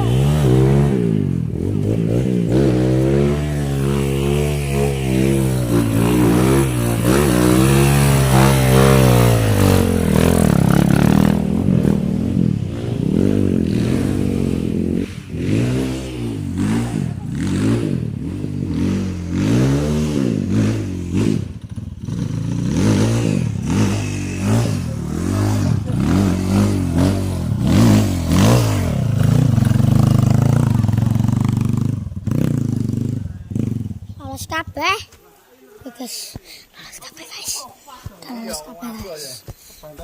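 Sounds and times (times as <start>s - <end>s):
motorcycle engine revving: 0.0s - 34.8s.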